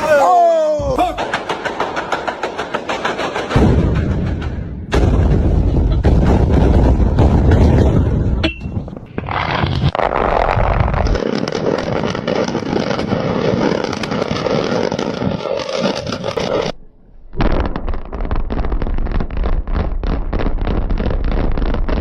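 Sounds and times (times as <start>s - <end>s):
building collapsing crash: 0.0s - 11.2s
dense crackle over low rumble: 5.0s - 14.4s, 16.0s - 22.0s.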